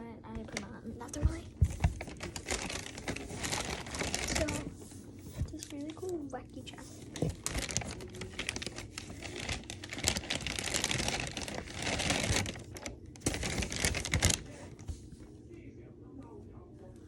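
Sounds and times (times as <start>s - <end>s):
plastic crinkling: 0.2s - 15.2s
plastic toys clattering: 0.4s - 4.7s, 7.0s - 14.8s.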